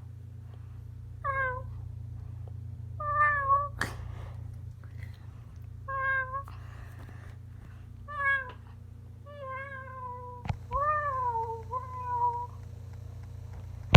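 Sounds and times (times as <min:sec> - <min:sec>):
cat meowing: 0:01.2 - 0:01.7, 0:03.0 - 0:03.8, 0:05.9 - 0:06.6, 0:08.1 - 0:08.7, 0:09.3 - 0:12.6.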